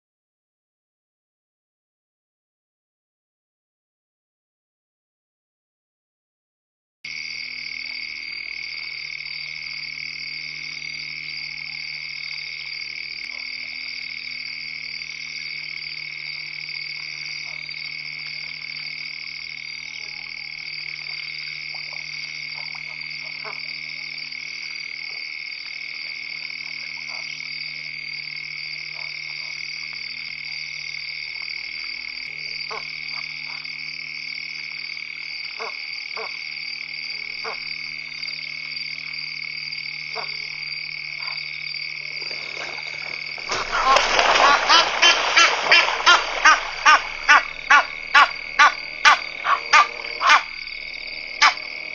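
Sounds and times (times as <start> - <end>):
chorus of frogs trilling: 7.1 - 51.9
lower frog calls: 15.4 - 24.0, 26.0 - 27.5, 32.4 - 33.7, 35.5 - 36.5, 37.1 - 37.8, 40.0 - 51.9
faint low hum: 36.6 - 51.9.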